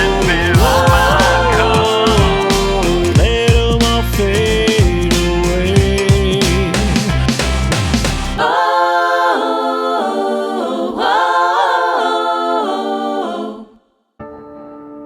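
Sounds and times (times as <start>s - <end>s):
sustained instrumental tones: 0.0s - 4.3s
full-band song: 0.0s - 8.5s
wordless vocal harmonies: 0.0s - 14.0s.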